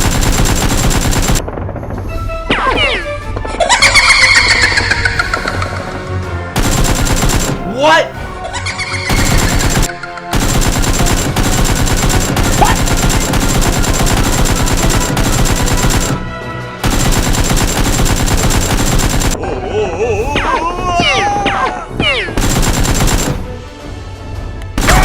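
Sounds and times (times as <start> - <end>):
automatic gunfire: 0.0 - 1.4, 6.6 - 7.7, 9.1 - 19.4, 22.4 - 23.4, 24.8 - 25.0.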